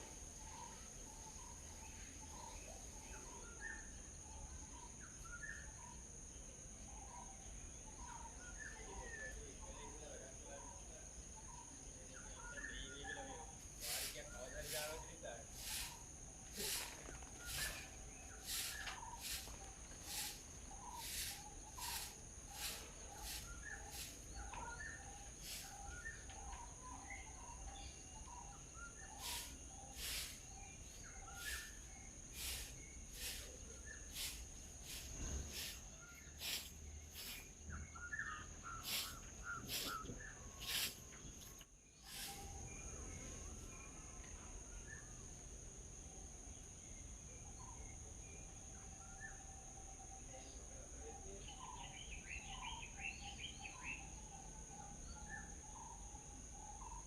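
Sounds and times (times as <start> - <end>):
small birds chirping: 0.0 - 57.0
high-pitched insect drone: 13.3 - 43.6
sharp repeated bird chip: 15.6 - 16.9, 17.5 - 24.8, 29.1 - 30.4, 31.3 - 37.6, 38.8 - 40.0, 40.6 - 41.0.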